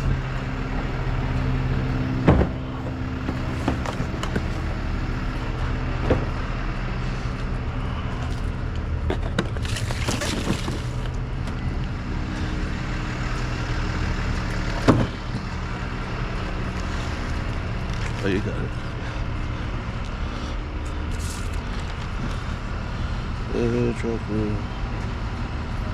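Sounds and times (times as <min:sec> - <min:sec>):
vehicle engine idling: 0:00.0 - 0:25.9
knocks: 0:02.2 - 0:04.5.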